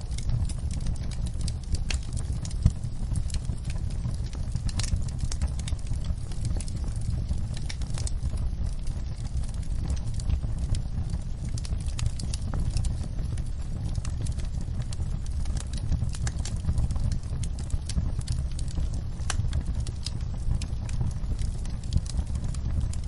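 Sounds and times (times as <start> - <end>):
wood fire crackling and popping: 0.0 - 23.0.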